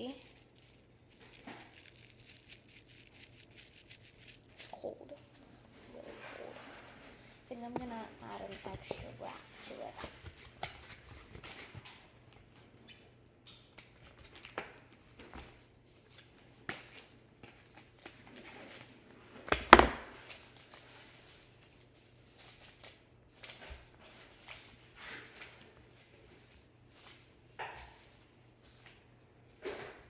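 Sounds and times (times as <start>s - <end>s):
cling wrap crinkling: 0.0s - 11.9s.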